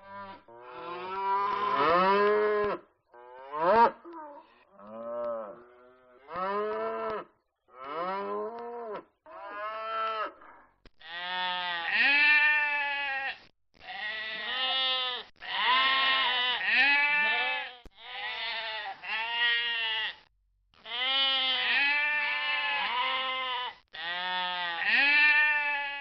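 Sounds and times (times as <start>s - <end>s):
sheep bleating: 0.0s - 2.2s, 11.0s - 26.0s.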